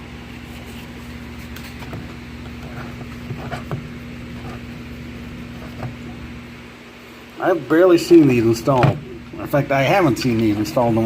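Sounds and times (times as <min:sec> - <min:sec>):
steady low hum: 0:00.0 - 0:11.0
soft rubbing on plastic: 0:00.3 - 0:06.2.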